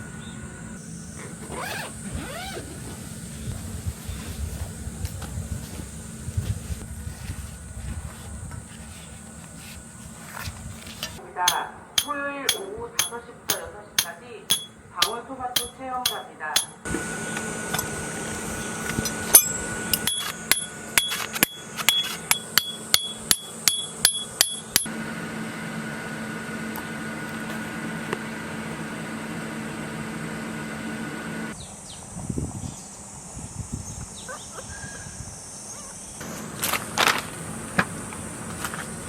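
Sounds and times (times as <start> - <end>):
steady machine hum: 5.9 - 31.6
sharp metallic taps: 11.0 - 16.9, 19.0 - 24.9.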